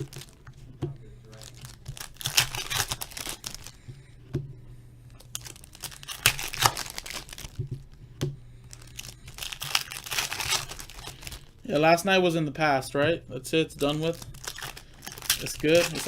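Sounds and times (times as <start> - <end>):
wrappers crinkling and tearing: 0.0 - 0.6, 1.2 - 3.8, 5.1 - 8.0, 8.6 - 12.0, 13.7 - 16.0
steady low hum: 0.0 - 16.0.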